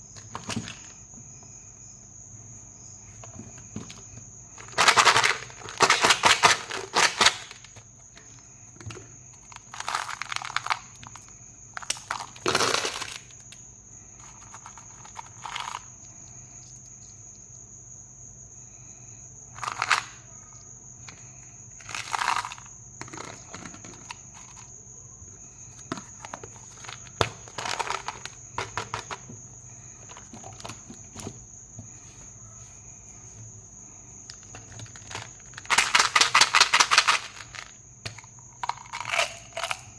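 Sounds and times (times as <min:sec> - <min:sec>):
plastic wrappers crinkling: 0:04.6 - 0:07.8, 0:09.5 - 0:10.9.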